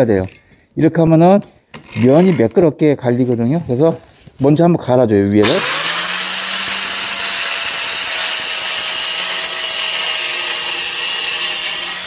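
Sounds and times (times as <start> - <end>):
angle grinder grinding steel: 5.4 - 12.0.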